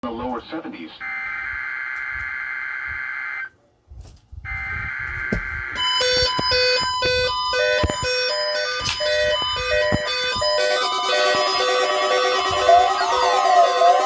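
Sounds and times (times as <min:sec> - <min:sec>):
melodic music-like tones: 0:05.8 - 0:14.0.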